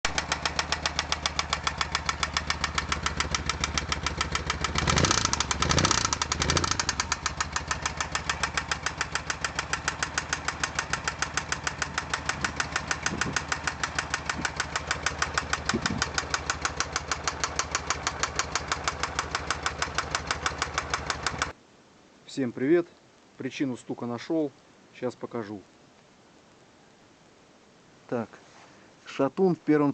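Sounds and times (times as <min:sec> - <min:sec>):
engine running with knock: 0:00.1 - 0:21.5.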